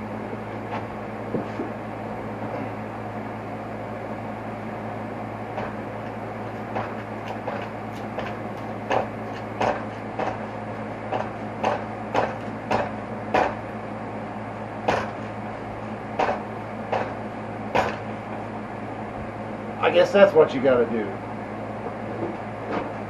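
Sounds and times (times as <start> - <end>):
low hum: 0.0 - 23.0
short knocks on metal: 6.7 - 10.4, 11.1 - 13.6, 16.2 - 18.0.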